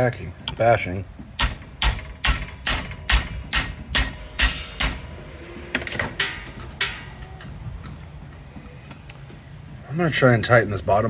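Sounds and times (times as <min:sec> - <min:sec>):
hammer striking metal fittings: 0:01.4 - 0:07.5.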